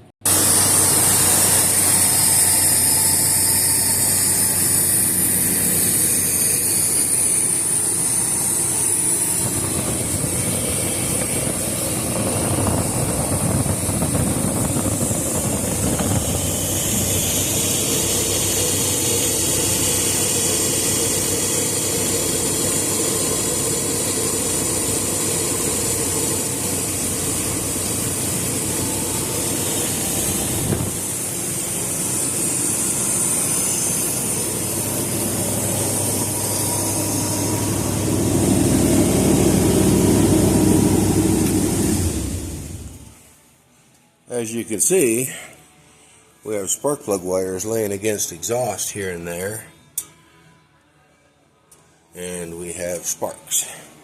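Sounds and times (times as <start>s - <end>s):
engine misfire: 0.0s - 43.4s
car engine idling: 0.2s - 43.4s
high hiss: 0.3s - 43.2s.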